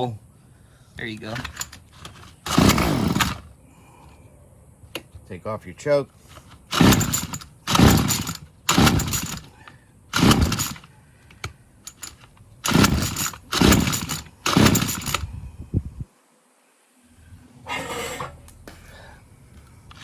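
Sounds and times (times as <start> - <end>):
recoil starter pulls: 1.0 - 3.5, 6.4 - 9.5, 10.1 - 15.3
engine turning over: 1.4 - 3.5, 6.7 - 9.5, 10.1 - 10.9, 11.9 - 15.2.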